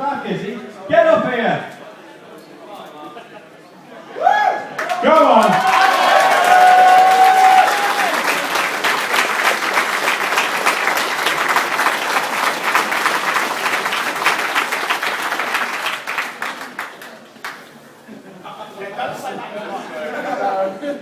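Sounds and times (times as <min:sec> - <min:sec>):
large audience applauding: 0:04.8 - 0:17.7.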